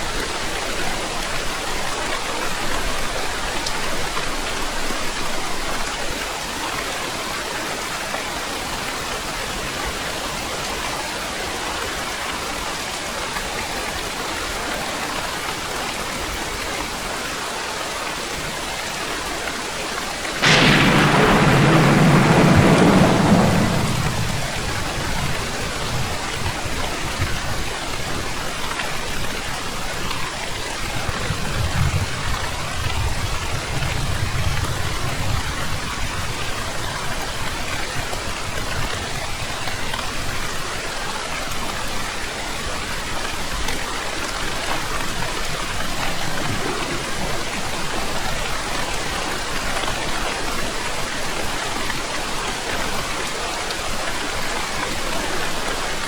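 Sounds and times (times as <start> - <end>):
steady rain falling: 0.0 - 56.0
low rumble: 20.4 - 25.7.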